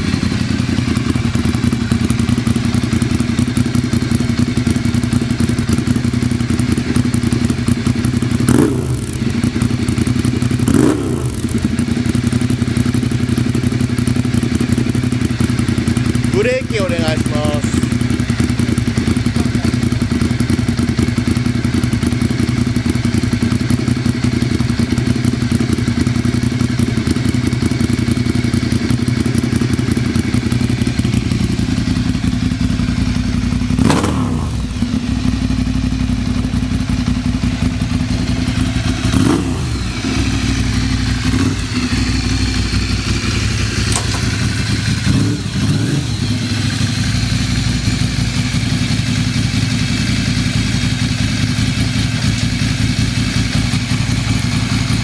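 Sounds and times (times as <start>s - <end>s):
motorcycle engine idling: 0.0s - 55.0s
thumps and clunks: 43.9s - 44.5s.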